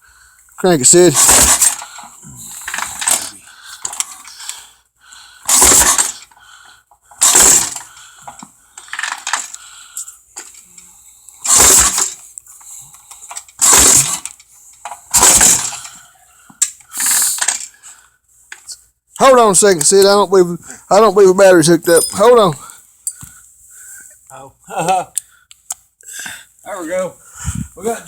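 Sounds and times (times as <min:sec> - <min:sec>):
metallic clinks and rattles: 0:01.0 - 0:04.5, 0:05.5 - 0:06.4, 0:07.1 - 0:10.8, 0:13.0 - 0:16.0, 0:17.4 - 0:17.8, 0:21.8 - 0:22.3.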